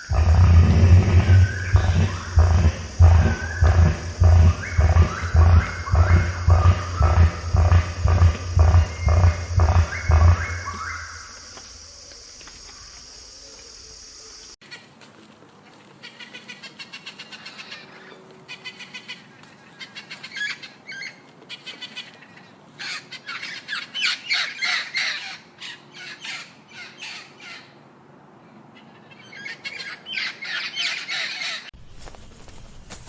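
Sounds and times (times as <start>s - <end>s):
bird squawking: 0.0s - 11.4s.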